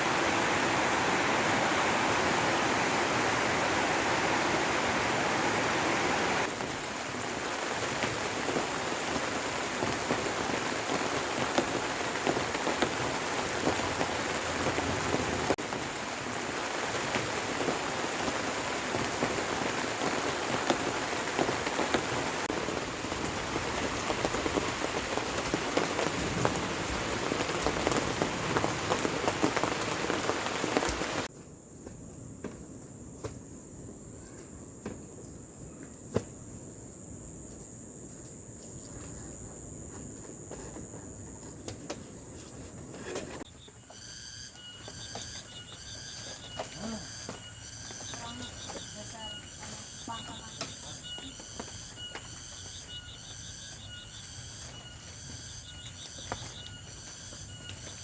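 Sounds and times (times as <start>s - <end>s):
raindrops hitting a surface: 0.0s - 31.3s, 44.5s - 58.0s
steady rain falling: 0.0s - 31.3s, 42.9s - 58.0s.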